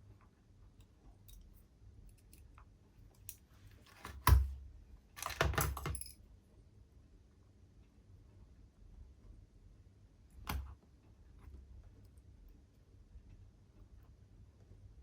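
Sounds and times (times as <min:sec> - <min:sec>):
clinks of small metal parts: 0:05.2 - 0:06.2.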